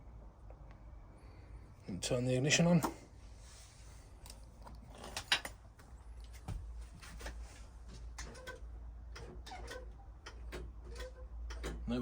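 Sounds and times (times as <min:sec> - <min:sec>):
brake pedal clicks and creaks: 0:08.0 - 0:12.0.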